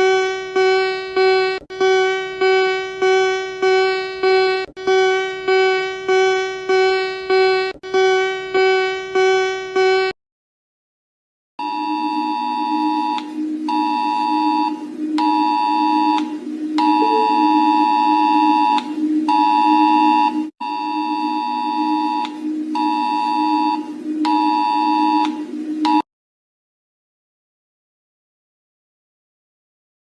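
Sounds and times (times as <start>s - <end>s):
pulsing buzzer-like alarm tone: 0.0s - 10.1s, 11.6s - 26.0s
low drone: 12.0s - 26.0s.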